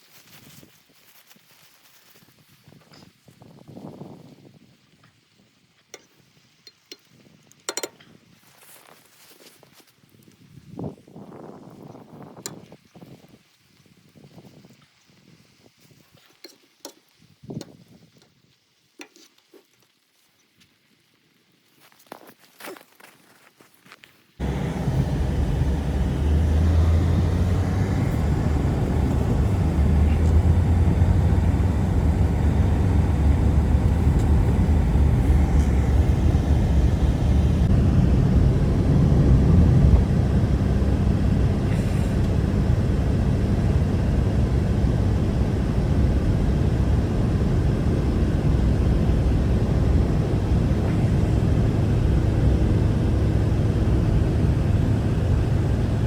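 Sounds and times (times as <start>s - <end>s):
strong blizzard wind: 24.4s - 56.0s.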